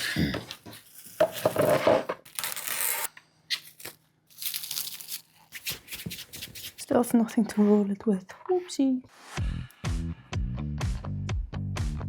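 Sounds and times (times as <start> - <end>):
crinkling and tearing of wrapper: 2.2 - 6.0.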